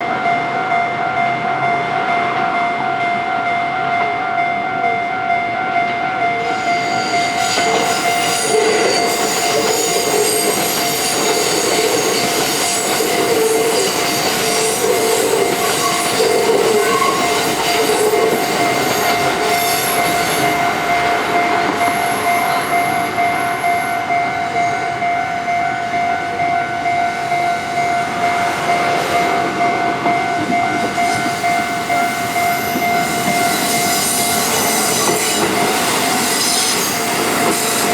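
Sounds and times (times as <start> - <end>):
level crossing warning bell: 0.0 - 37.9
diesel train passing: 5.7 - 37.9
train wheels squealing on rails: 6.4 - 24.8, 28.0 - 37.9.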